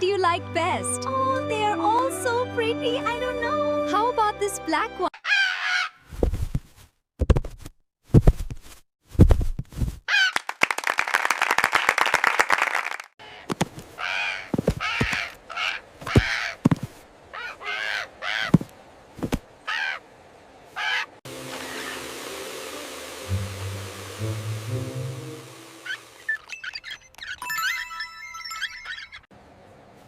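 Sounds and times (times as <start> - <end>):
bird cawing harshly: 5.2 - 6.0, 10.1 - 10.4, 13.2 - 16.6, 17.3 - 18.7, 19.6 - 20.0, 20.8 - 22.1.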